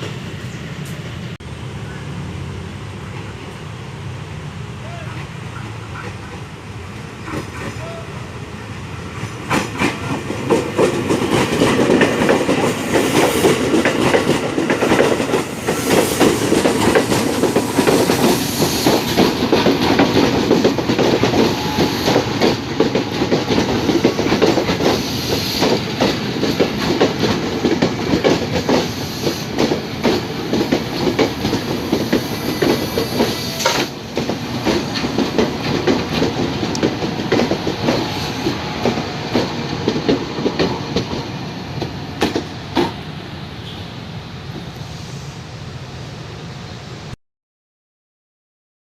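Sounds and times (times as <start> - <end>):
electric train passing: 0.0 - 47.2
wheels clattering over rail joints: 9.4 - 43.1.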